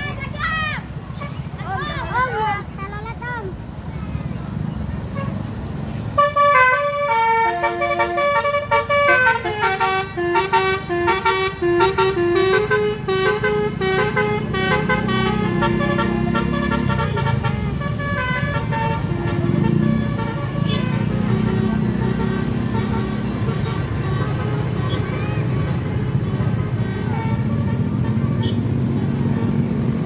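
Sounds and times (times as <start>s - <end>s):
bus engine rumble: 0.0s - 30.0s
bus horn playing a tune: 6.2s - 30.0s.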